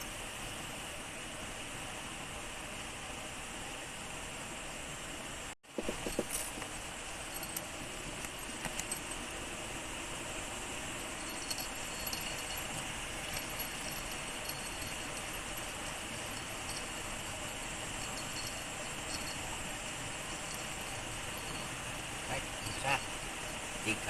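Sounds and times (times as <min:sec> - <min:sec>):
light clicks and rattles: 0:05.9 - 0:09.3, 0:11.2 - 0:19.4
river water flowing: 0:06.7 - 0:24.0.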